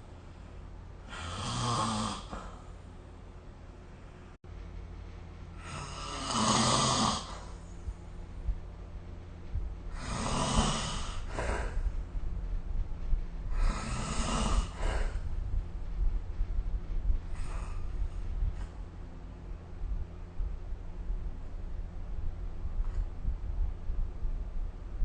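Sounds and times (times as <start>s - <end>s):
person snoring: 1.1s - 2.6s, 5.6s - 7.6s, 9.9s - 11.8s, 13.5s - 15.2s.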